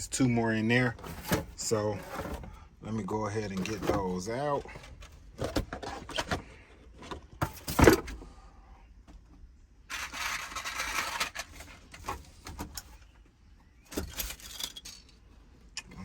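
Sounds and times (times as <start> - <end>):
tools and metal parts clicking: 13.9 - 15.2.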